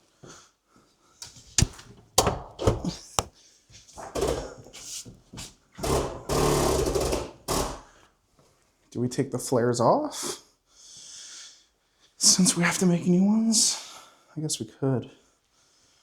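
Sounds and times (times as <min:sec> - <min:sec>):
knocks and thuds: 0:01.6 - 0:03.3.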